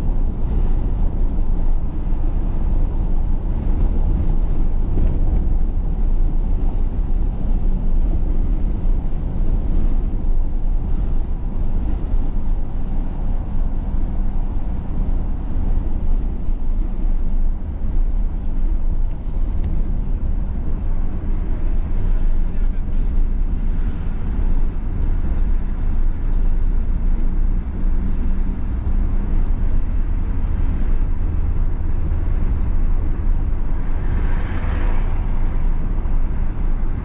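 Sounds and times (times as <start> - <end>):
road noise: 0.0 - 37.0
vehicle engine rumble: 0.0 - 37.0
wind noise: 0.0 - 37.0.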